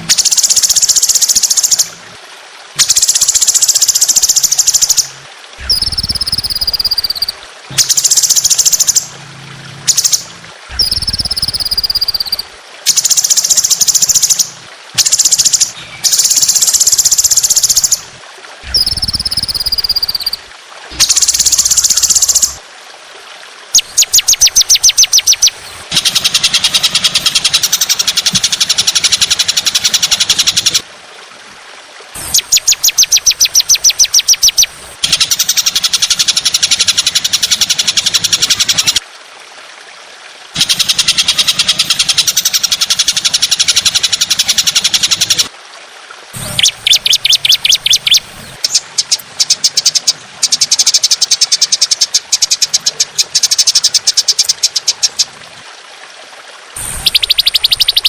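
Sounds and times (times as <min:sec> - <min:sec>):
songbird singing harsh rapid notes: 0:02.8 - 0:09.1, 0:09.9 - 0:18.0, 0:18.7 - 0:20.4, 0:23.8 - 0:30.8, 0:32.2 - 0:39.0, 0:46.4 - 0:55.2, 0:56.8 - 0:58.0.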